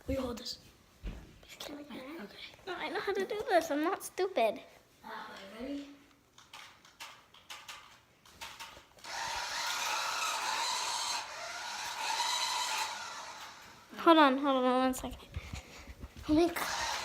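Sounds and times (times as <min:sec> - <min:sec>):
toy car electric motor whirring: 0:08.4 - 0:14.0, 0:16.2 - 0:17.0.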